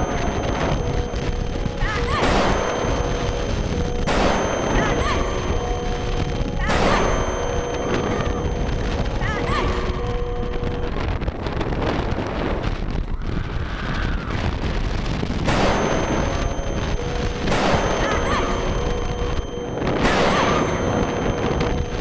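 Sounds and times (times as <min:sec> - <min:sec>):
wind noise: 0:00.0 - 0:22.0
boom sound effect: 0:15.4 - 0:22.0.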